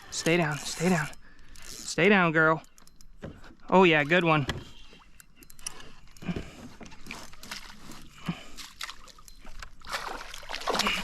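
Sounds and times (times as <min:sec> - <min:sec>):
water splashing and sloshing: 0:02.7 - 0:11.0.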